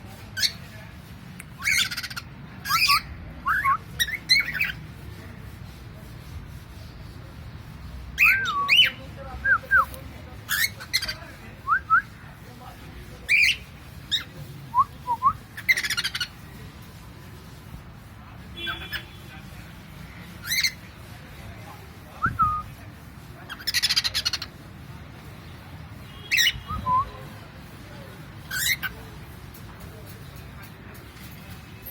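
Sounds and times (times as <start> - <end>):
cockatiel squawks and whistles: 1.6 - 4.8, 26.3 - 27.0.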